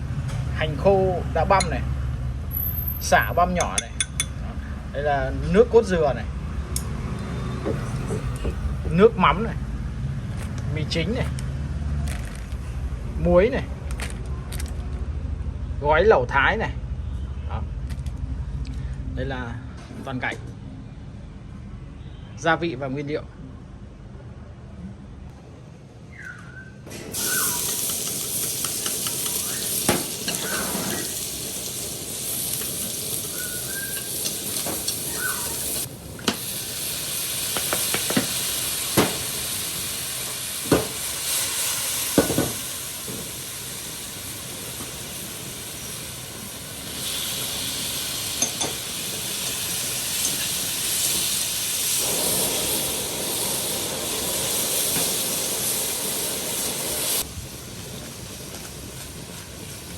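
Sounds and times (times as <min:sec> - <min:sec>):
food sizzling in hot oil: 0:02.4 - 0:04.4, 0:26.9 - 0:59.9.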